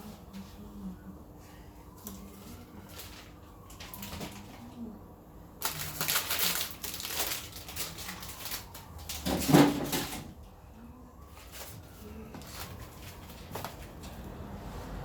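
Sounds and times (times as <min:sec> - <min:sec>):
plastic bags rustling: 0:01.8 - 0:04.9, 0:05.5 - 0:10.5, 0:11.2 - 0:15.0.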